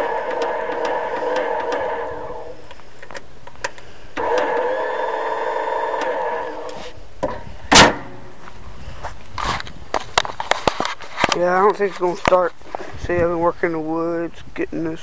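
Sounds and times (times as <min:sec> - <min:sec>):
electric starter cranking engine: 0:00.0 - 0:02.6, 0:04.1 - 0:07.0.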